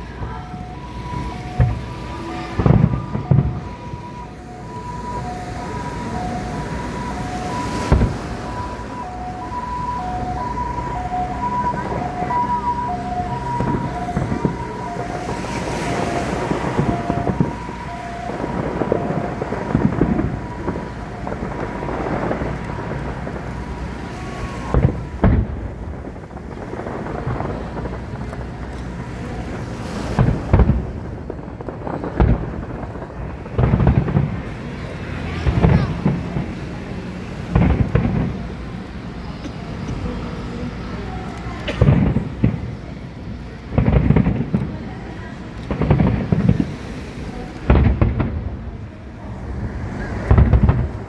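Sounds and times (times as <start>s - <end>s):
two-tone siren wailing: 0.0s - 25.0s
sharp bangs: 0.0s - 28.3s
fireworks booming and crackling: 0.0s - 51.0s.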